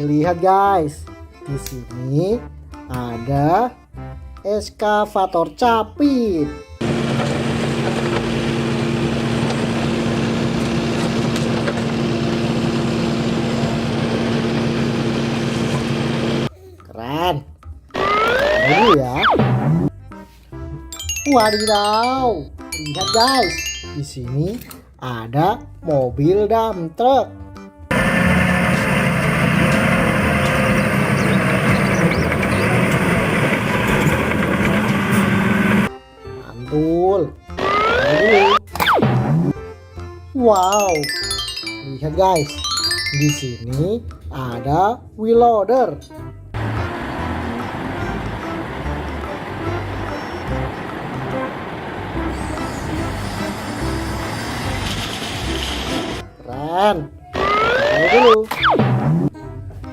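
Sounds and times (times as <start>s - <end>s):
truck engine running: 6.8s - 16.5s, 27.9s - 35.9s, 46.6s - 56.2s
toy excavator motor drone: 18.0s - 19.0s, 27.9s - 35.9s, 37.6s - 38.6s, 52.3s - 56.2s, 57.4s - 58.3s.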